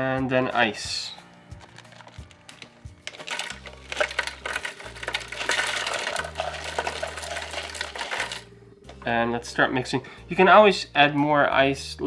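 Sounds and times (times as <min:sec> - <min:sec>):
ice cubes clattering: 0:01.5 - 0:08.5.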